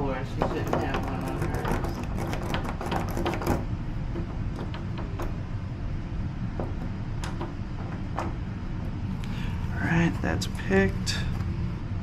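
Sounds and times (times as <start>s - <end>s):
steady low rumble: 3.6s - 12.0s.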